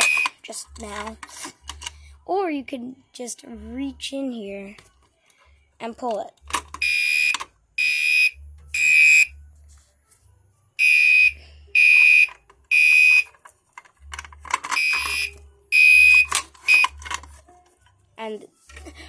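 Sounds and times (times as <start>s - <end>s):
fire alarm horn blasts: 6.8s - 9.3s, 10.8s - 13.2s, 14.8s - 16.3s.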